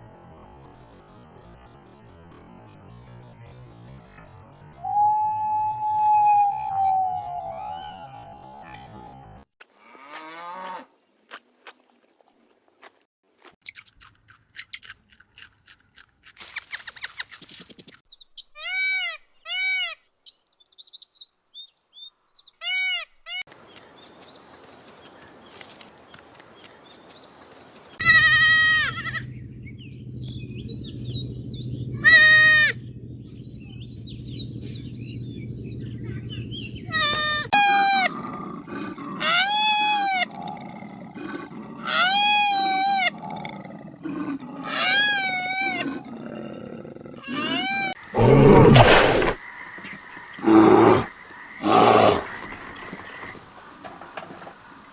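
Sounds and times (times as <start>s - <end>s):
goat bleating: 28.0s - 29.3s, 32.0s - 32.8s, 36.9s - 38.2s, 39.2s - 40.4s, 41.8s - 43.2s, 44.6s - 45.9s, 47.2s - 48.0s
low steady background hum: 28.0s - 39.6s
loud roar: 37.0s - 49.4s.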